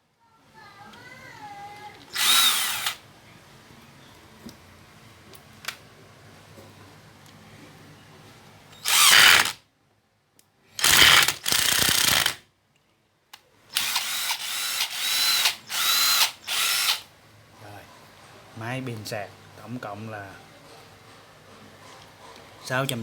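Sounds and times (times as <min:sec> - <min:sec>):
cordless drill motor spinning: 0:02.1 - 0:03.0, 0:08.8 - 0:09.6, 0:10.8 - 0:12.4, 0:13.7 - 0:17.0.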